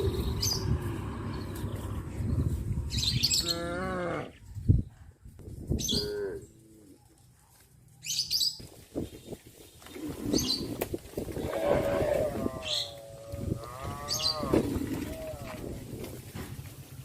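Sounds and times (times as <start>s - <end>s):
cattle mooing: 3.3s - 4.3s, 11.4s - 15.6s.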